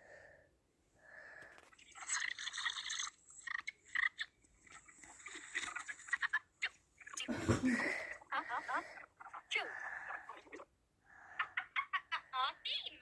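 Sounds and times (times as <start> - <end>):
breathy in-breaths: 0.0 - 1.7.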